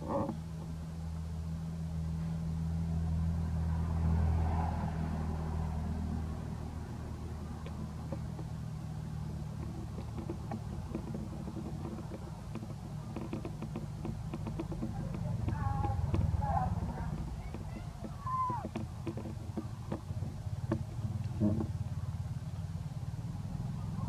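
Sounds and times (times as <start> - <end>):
low motor hum: 0.0 - 24.0
faint clicks: 7.2 - 22.7.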